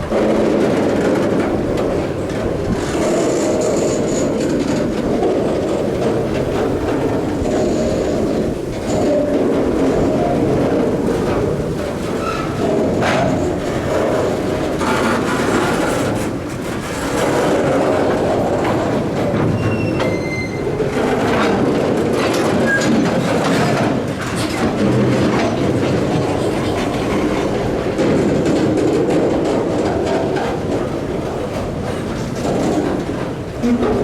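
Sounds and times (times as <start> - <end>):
train wheels clacking on rail joints: 0.0 - 34.0
high wheel squeal: 19.6 - 20.8.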